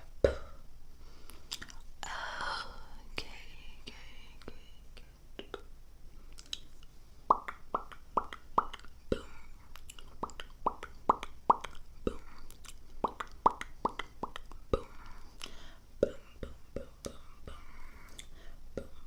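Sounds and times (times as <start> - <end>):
mouth pops: 7.3 - 9.2, 9.8 - 14.9.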